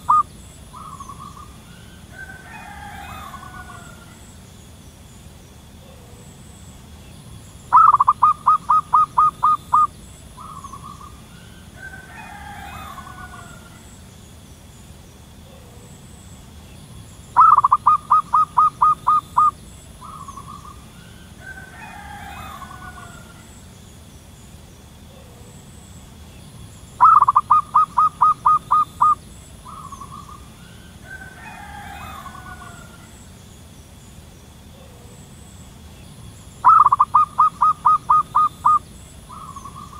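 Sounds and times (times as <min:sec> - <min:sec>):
dove cooing: 0:00.0 - 0:04.4, 0:07.7 - 0:14.0, 0:17.4 - 0:23.6, 0:27.0 - 0:33.3, 0:36.6 - 0:39.9
faint bird call: 0:00.0 - 0:04.4, 0:07.7 - 0:14.0, 0:17.4 - 0:23.7, 0:27.0 - 0:33.3, 0:36.6 - 0:39.9.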